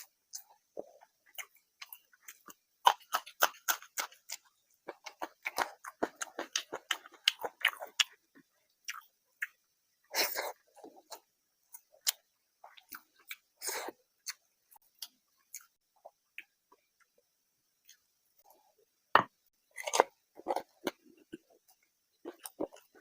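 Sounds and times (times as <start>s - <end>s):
chewing with mouth clicks: 0.0s - 9.6s.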